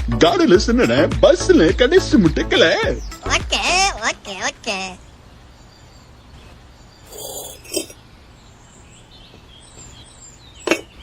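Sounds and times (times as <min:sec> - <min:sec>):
faint bird chirps: 0:04.8 - 0:11.0
short clinks and knocks: 0:10.6 - 0:11.0.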